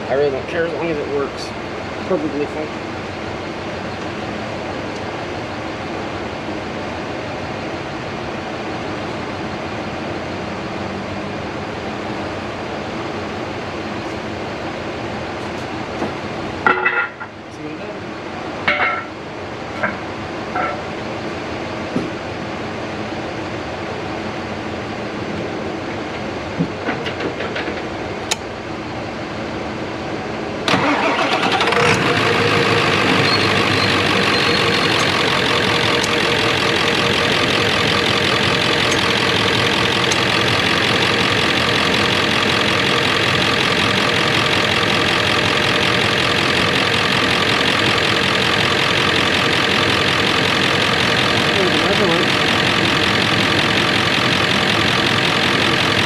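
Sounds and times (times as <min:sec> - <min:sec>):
diesel engine idling: 0:30.3 - 0:56.0
diesel engine cranking and starting: 0:30.6 - 0:56.0.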